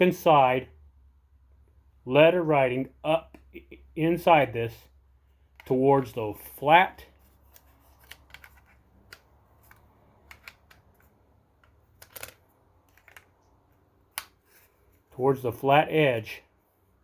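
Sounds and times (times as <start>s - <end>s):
plastic parts clicking: 7.5s - 13.4s.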